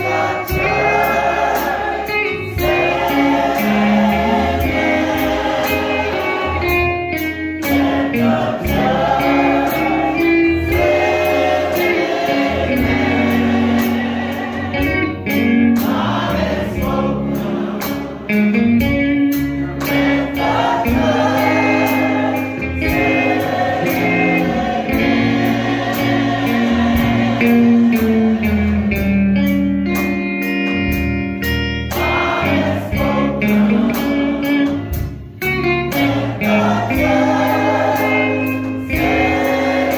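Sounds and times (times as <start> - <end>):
choir singing gospel music: 0.0 - 39.9.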